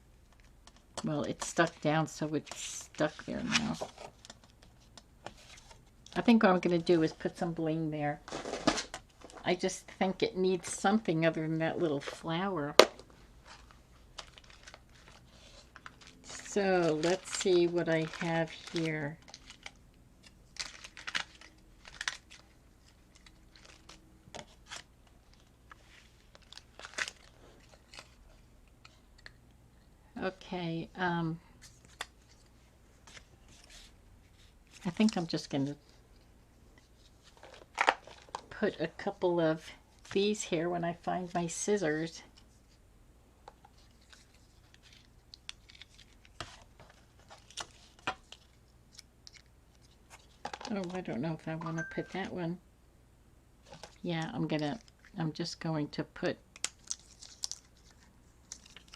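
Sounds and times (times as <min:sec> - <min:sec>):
paper and plastic rustling: 0:00.4 - 0:07.4, 0:08.2 - 0:09.5, 0:13.0 - 0:29.0, 0:31.6 - 0:38.6, 0:43.6 - 0:51.1, 0:53.6 - 0:54.0.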